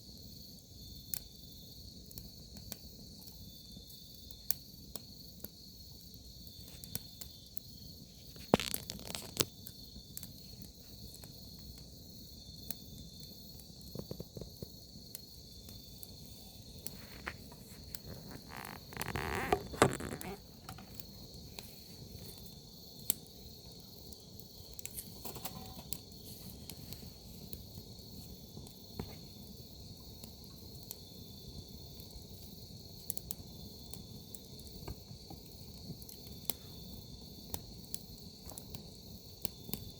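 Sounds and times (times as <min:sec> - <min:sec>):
crickets chirping: 0:00.0 - 0:39.9
fire crackling and popping: 0:00.1 - 0:39.9
crunching rustle: 0:08.2 - 0:09.5, 0:16.8 - 0:20.9.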